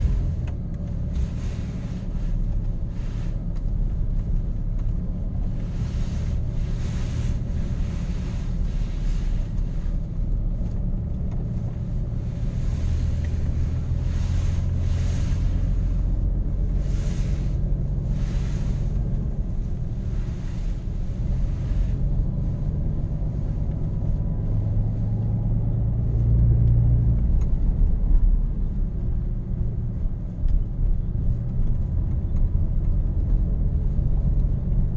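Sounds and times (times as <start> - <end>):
pickup truck engine rumbling: 0.0 - 34.9.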